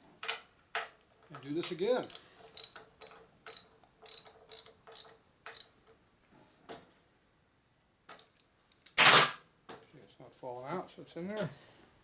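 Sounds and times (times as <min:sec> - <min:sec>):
ratchet wrench clicking: 0:02.0 - 0:05.8.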